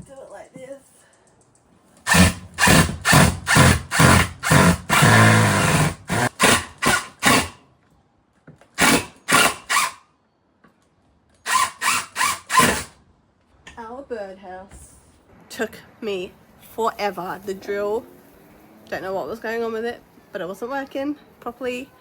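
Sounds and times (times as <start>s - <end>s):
power drill driving screws: 2.1s - 7.6s, 8.8s - 10.0s, 11.4s - 13.0s.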